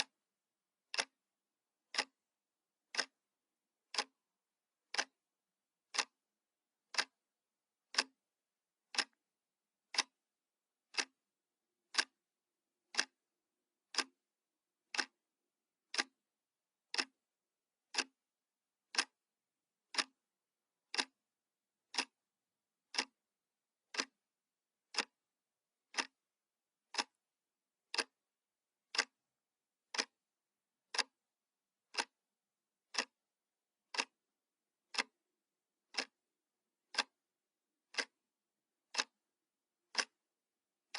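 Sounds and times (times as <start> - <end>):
clock ticking: 0.9 - 1.2, 1.9 - 2.2, 2.9 - 3.2, 3.8 - 4.2, 4.8 - 5.2, 5.8 - 6.2, 6.9 - 7.2, 7.9 - 8.2, 8.9 - 9.2, 9.9 - 10.2, 10.9 - 11.2, 11.9 - 12.2, 12.9 - 13.2, 13.9 - 14.2, 14.9 - 15.2, 15.9 - 16.2, 16.9 - 17.2, 17.9 - 18.2, 18.9 - 19.2, 19.8 - 20.2, 20.8 - 21.2, 21.9 - 22.2, 22.9 - 23.2, 23.9 - 24.2, 24.9 - 25.2, 25.9 - 26.2, 26.9 - 27.2, 27.9 - 28.2, 28.9 - 29.2, 29.9 - 30.2, 30.9 - 31.2, 31.9 - 32.2, 32.9 - 33.2, 33.9 - 34.2, 34.9 - 35.2, 35.9 - 36.2, 36.9 - 37.2, 37.9 - 38.2, 38.9 - 39.2, 39.9 - 40.2.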